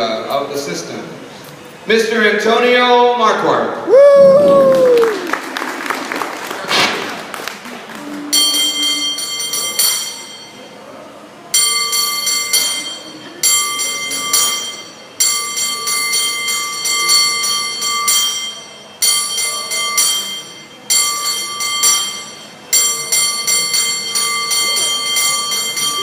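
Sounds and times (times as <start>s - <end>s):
cable car bell clanging: 8.3s - 10.8s, 11.5s - 26.0s.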